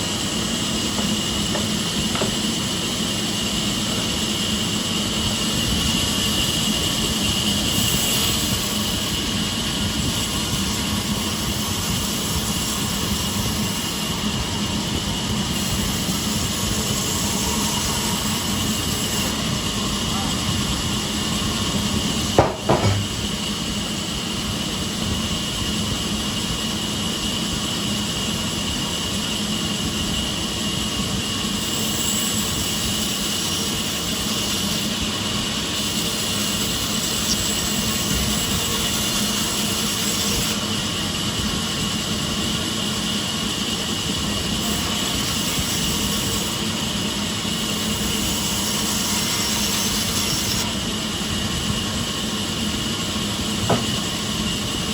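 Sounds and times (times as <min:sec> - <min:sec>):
sawmill machinery drone: 0:00.0 - 0:54.9
short knock: 0:22.4 - 0:23.1, 0:53.6 - 0:54.0.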